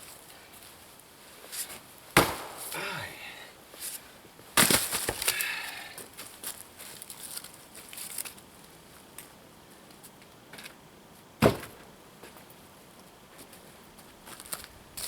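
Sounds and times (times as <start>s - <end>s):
axe striking log: 2.2s - 2.9s, 4.6s - 5.4s, 11.4s - 11.7s.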